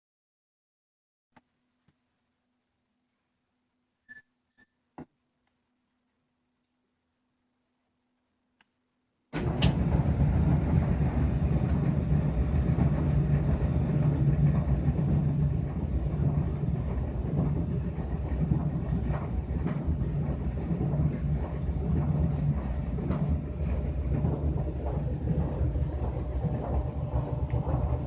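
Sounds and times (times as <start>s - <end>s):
clothes dryer rumbling: 9.4s - 28.0s.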